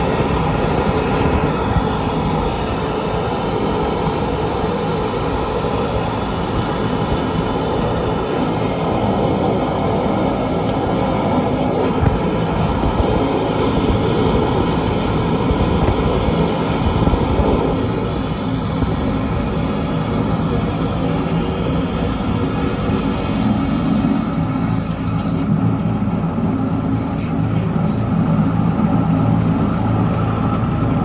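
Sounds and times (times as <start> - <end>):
drain jetting machine running: 0.0 - 31.0.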